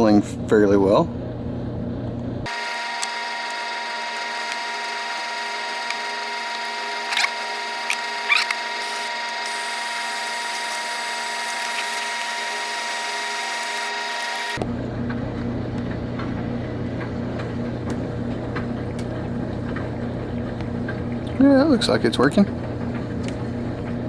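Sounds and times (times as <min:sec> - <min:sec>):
high-pitched electric motor whine: 0:02.5 - 0:14.7.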